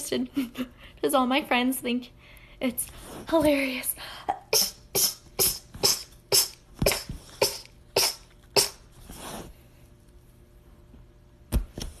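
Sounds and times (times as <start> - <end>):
person sneezing rapidly: 4.5 - 8.9.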